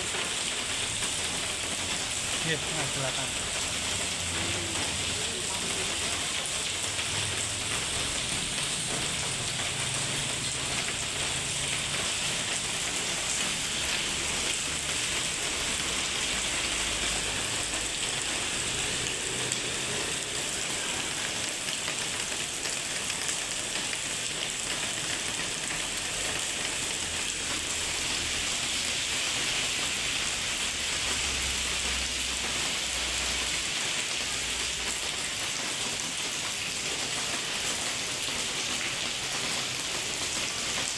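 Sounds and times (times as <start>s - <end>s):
heavy rain on hard surfaces: 0.0s - 40.9s.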